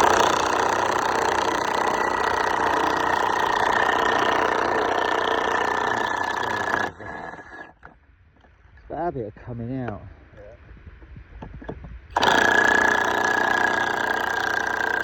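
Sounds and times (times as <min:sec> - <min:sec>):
chainsaw engine running: 0:00.0 - 0:07.8, 0:12.2 - 0:15.0.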